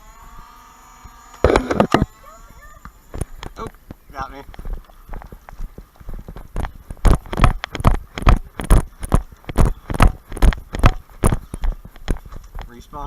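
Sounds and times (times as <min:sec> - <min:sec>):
footsteps at a quick pace: 0:03.1 - 0:13.0.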